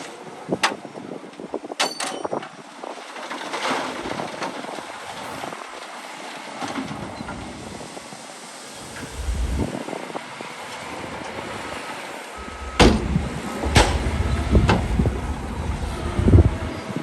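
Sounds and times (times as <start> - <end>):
heavy machinery engine rumble: 8.5 - 11.7, 12.3 - 17.0
loud sharp bangs: 12.4 - 14.9.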